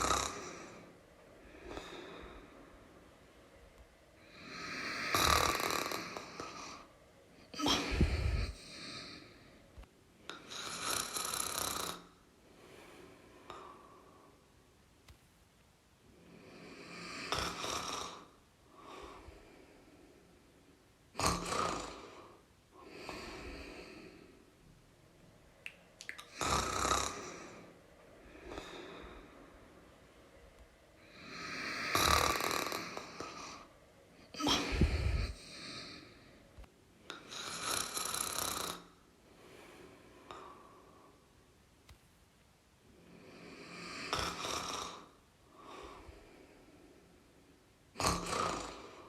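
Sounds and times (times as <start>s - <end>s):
person snoring: 0.0s - 2.6s, 4.2s - 6.9s, 7.5s - 9.4s, 10.3s - 12.2s, 16.2s - 19.3s, 21.2s - 24.3s, 26.2s - 29.4s, 31.0s - 33.7s, 34.3s - 36.3s, 37.1s - 39.0s, 43.1s - 46.2s, 48.0s - 49.0s
quiet breaths: 0.0s - 49.0s.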